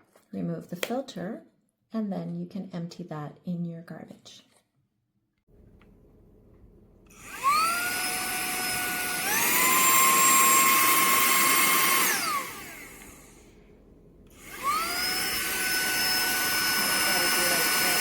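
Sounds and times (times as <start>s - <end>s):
handheld vacuum motor whining: 7.1s - 13.6s, 14.2s - 18.0s.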